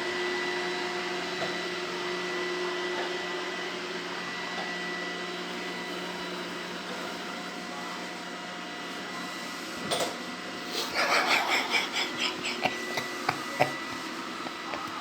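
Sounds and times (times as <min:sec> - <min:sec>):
robot vacuum cleaner humming: 0:10.6 - 0:15.0.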